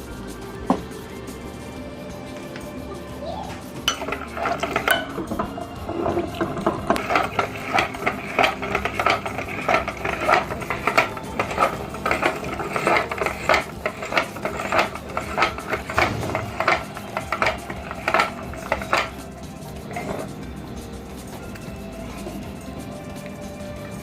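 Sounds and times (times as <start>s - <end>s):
marbles rattling against metal: 3.7s - 21.3s.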